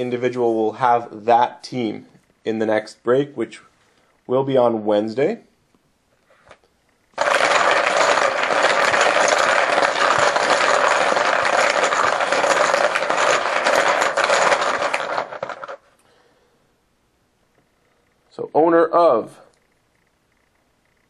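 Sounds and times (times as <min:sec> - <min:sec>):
poker chips clattering: 0:07.2 - 0:15.8.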